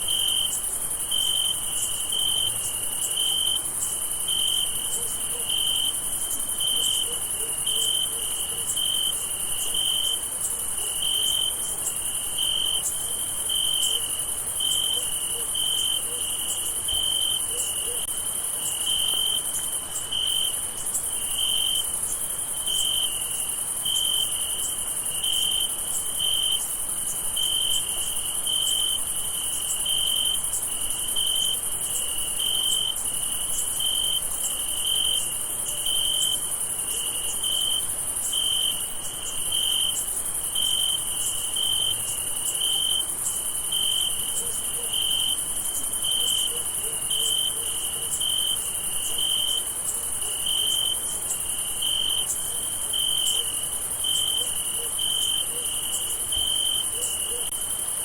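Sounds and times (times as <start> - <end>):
cricket chirping: 0.0 - 58.0.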